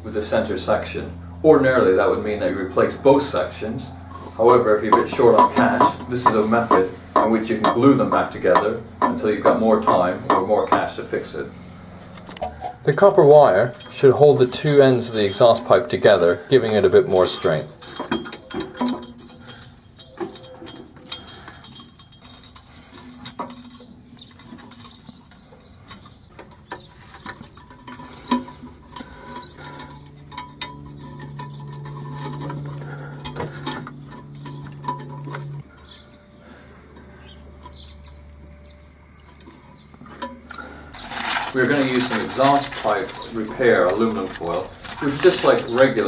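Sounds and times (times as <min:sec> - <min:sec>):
low steady hum: 0:00.0 - 0:46.0
wire clicking and scraping: 0:11.8 - 0:36.0, 0:39.2 - 0:46.0.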